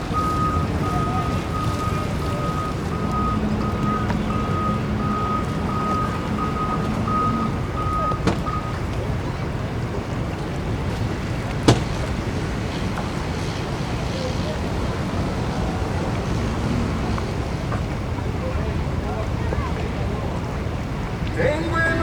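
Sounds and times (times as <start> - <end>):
reversing beeper: 0.0 - 8.8
sharp knock: 11.7 - 12.1.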